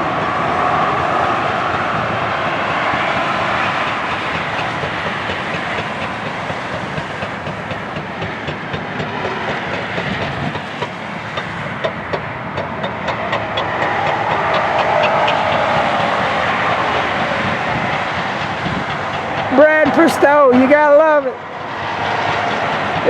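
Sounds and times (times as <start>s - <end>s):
backhoe machine noise: 2.9s - 20.8s.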